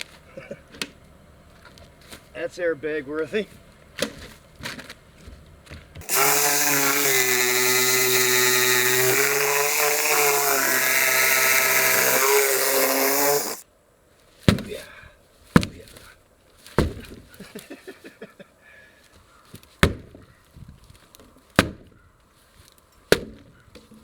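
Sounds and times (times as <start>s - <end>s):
power saw cutting wood: 6.0s - 13.6s.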